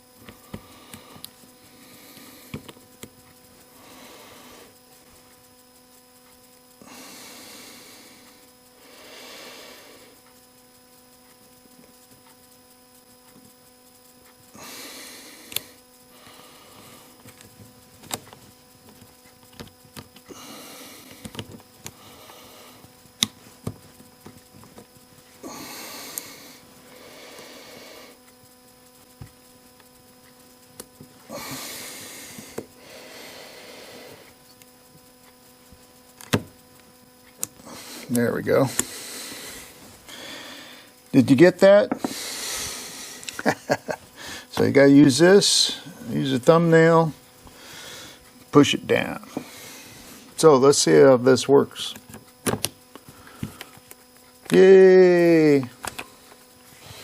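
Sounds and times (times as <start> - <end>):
faint electrical hum: 0.0 - 57.0
person breathing: 3.6 - 4.9, 6.8 - 10.3, 14.5 - 17.3, 20.2 - 22.9, 25.4 - 28.3, 31.2 - 34.4, 37.6 - 38.1, 38.7 - 41.0, 41.9 - 43.4, 44.1 - 44.5, 47.5 - 48.4, 49.2 - 50.4, 53.0 - 53.8.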